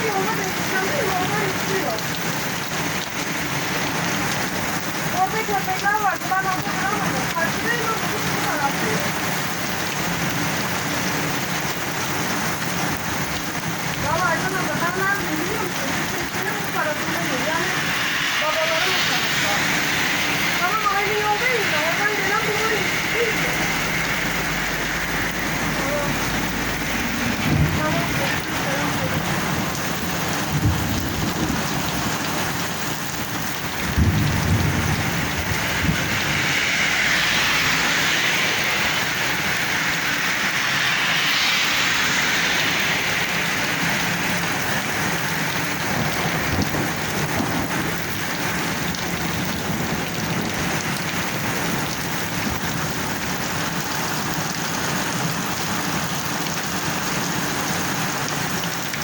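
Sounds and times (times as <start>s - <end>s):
heavy rain pouring: 0.0s - 59.0s
low rumble: 15.1s - 59.0s.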